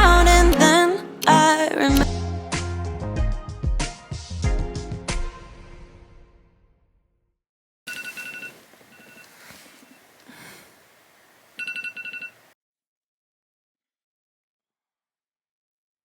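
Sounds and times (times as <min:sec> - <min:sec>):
electronic alarm beeping: 0:07.9 - 0:09.3, 0:11.6 - 0:12.4.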